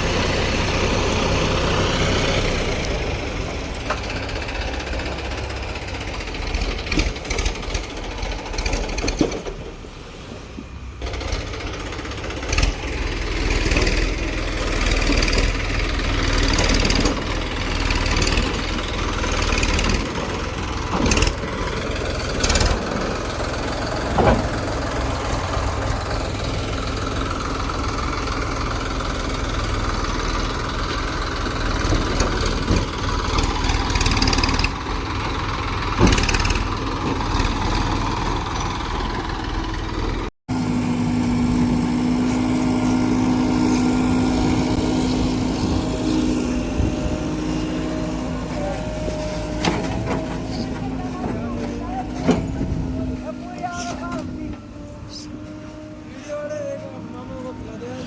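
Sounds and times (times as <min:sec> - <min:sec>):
heavy diesel engine running: 0:00.0 - 0:58.0
sharp knocks and clanks: 0:23.8 - 0:24.9, 0:31.7 - 0:37.8.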